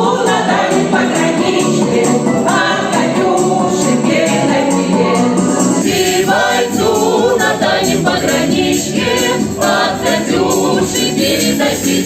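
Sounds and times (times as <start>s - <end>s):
instrumental music in harmony: 0.0s - 12.0s.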